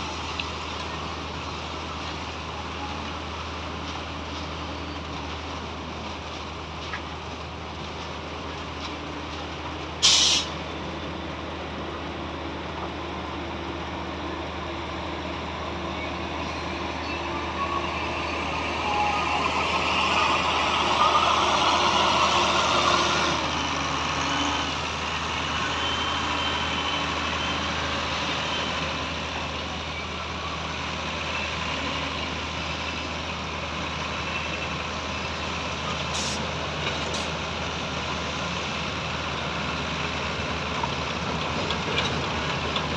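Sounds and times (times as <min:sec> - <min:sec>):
heavy diesel truck engines: 0:00.0 - 0:42.9
air brake hiss: 0:10.0 - 0:10.6, 0:36.1 - 0:36.5.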